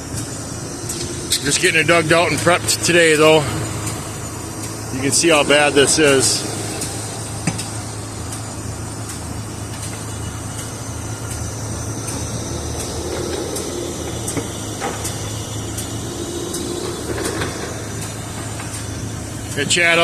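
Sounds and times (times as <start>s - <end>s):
excavator diesel engine running: 0.0s - 20.0s
hydraulic whine: 0.0s - 20.0s.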